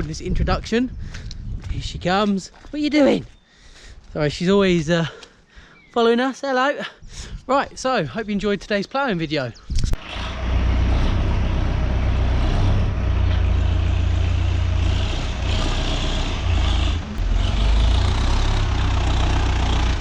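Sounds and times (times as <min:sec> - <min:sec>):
tractor engine rumbling: 0:09.6 - 0:20.0.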